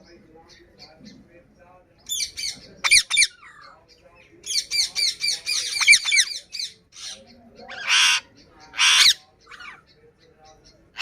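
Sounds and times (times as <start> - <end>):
parrot chirping: 4.4 - 9.8
parrot harsh call: 7.0 - 9.8.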